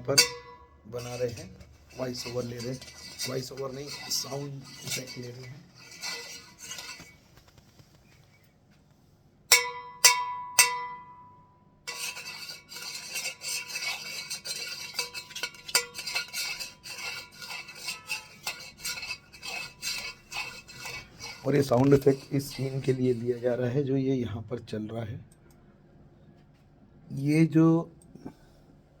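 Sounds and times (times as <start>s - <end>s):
metal pan struck and ringing: 0.0s - 0.8s, 9.5s - 11.3s
spoon clinking and scraping metal: 0.0s - 7.2s, 11.9s - 23.5s.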